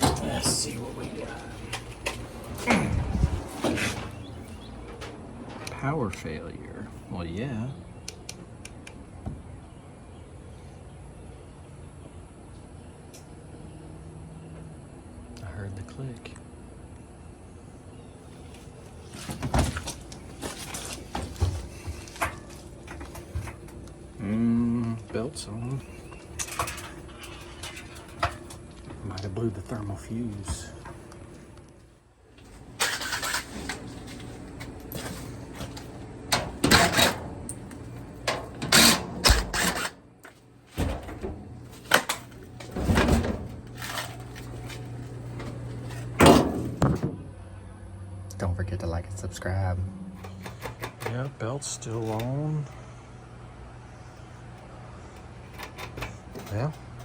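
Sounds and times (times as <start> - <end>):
steady low hum: 0.0 - 57.0
metal knocks and rattles: 26.1 - 28.7, 32.8 - 40.0, 40.7 - 47.2
dryer door knocks and clunks: 40.8 - 43.6, 46.2 - 47.2.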